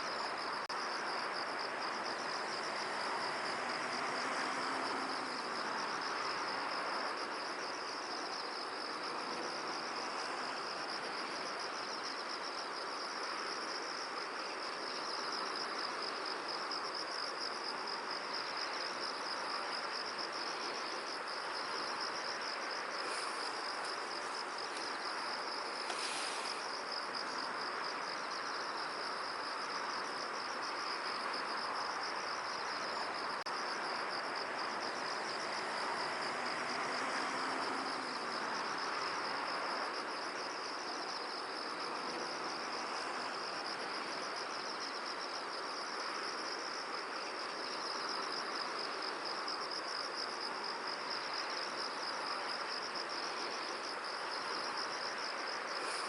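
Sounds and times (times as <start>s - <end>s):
insects trilling: 0.0s - 56.0s
wind rushing hiss: 22.3s - 27.9s.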